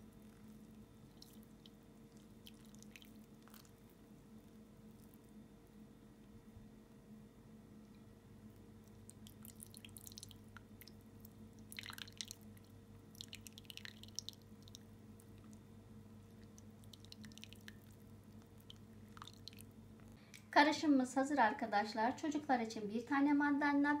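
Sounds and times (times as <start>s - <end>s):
juice dripping into a glass: 0.2s - 5.2s, 8.6s - 20.5s.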